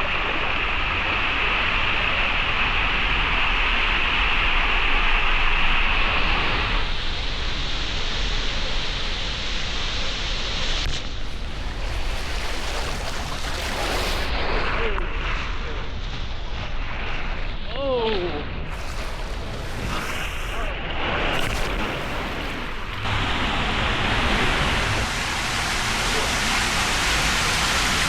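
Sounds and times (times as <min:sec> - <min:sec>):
wind noise: 0:10.6 - 0:28.0
rushing water: 0:10.9 - 0:15.0, 0:18.6 - 0:28.0.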